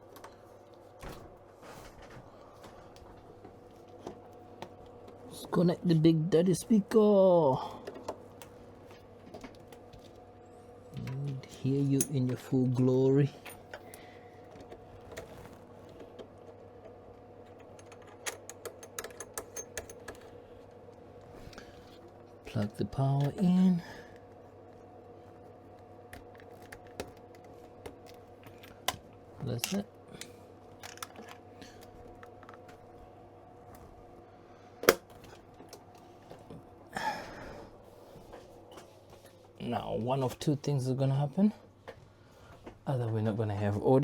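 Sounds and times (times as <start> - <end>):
faint steady hum: 0.0 - 44.0.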